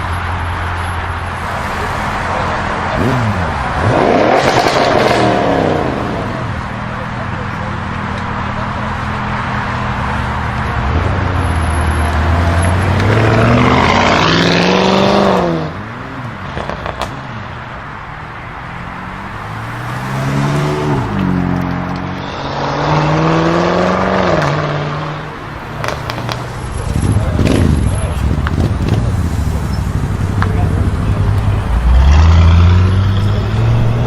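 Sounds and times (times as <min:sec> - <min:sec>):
car engine revving hard: 0:01.7 - 0:06.4, 0:11.7 - 0:15.8, 0:19.4 - 0:25.2, 0:31.2 - 0:34.0
exhaust pops: 0:25.8 - 0:29.6.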